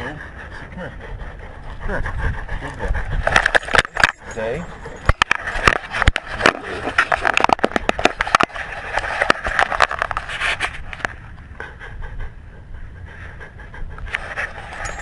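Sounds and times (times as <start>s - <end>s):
crackling and scraping handling noise: 3.2s - 11.2s.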